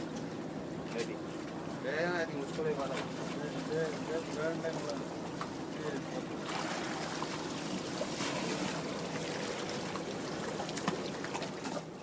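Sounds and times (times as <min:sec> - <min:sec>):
sea water splashing against boat: 0:00.0 - 0:12.0.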